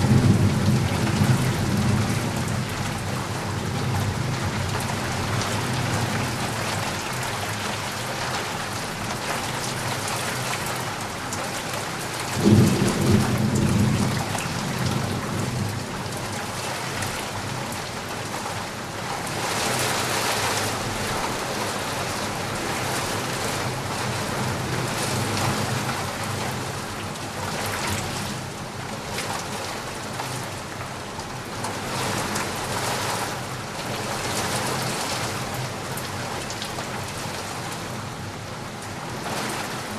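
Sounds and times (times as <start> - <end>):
steady rain falling: 0.0 - 39.9
thunder clap rumbling: 12.4 - 15.9.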